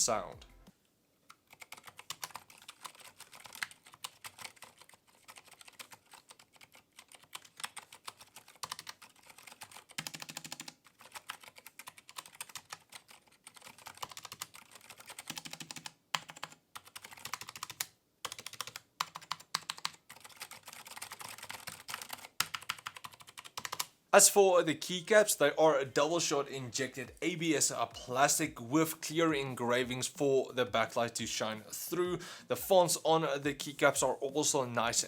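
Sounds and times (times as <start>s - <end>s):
mechanical keyboard typing: 1.4s - 23.9s.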